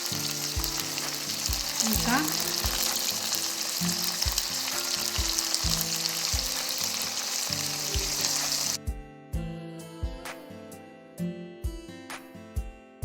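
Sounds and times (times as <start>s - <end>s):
fish sizzling in sauce: 0.0s - 8.8s.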